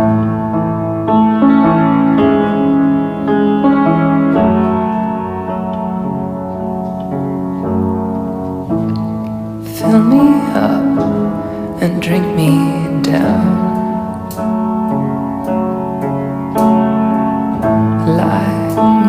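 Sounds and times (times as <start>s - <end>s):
piano playing slow chords: 0.0s - 19.0s
person singing: 9.6s - 14.3s, 18.0s - 19.0s.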